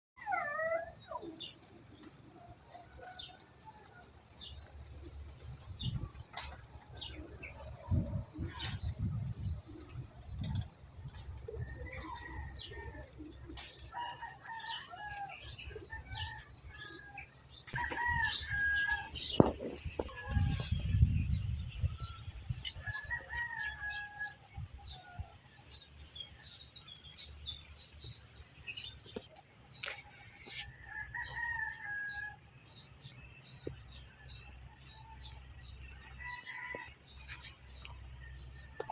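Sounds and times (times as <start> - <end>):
roosters crowing: 11.2 - 21.0, 22.0 - 25.4, 30.2 - 32.4, 34.2 - 37.3.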